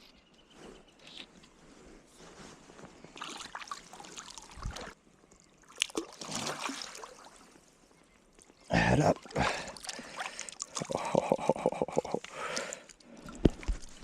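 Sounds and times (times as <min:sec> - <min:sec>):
water splashing in a stream: 0:03.1 - 0:07.7, 0:09.0 - 0:14.0.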